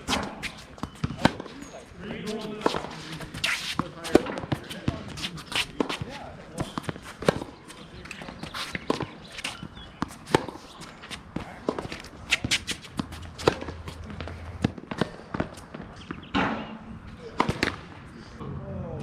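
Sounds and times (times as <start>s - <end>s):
tennis balls bouncing on court: 0.0s - 18.1s
tennis balls hit by racket: 0.0s - 18.1s
shoe scuffs: 2.2s - 14.4s.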